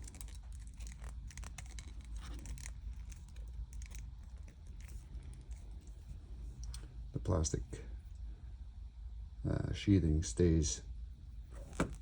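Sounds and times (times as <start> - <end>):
wires being twisted: 0.0 - 7.0.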